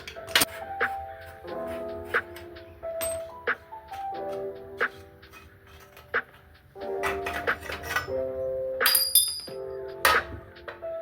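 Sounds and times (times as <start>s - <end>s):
lo-fi hip hop music: 0.0s - 11.0s
sharp metallic clink: 8.8s - 9.6s.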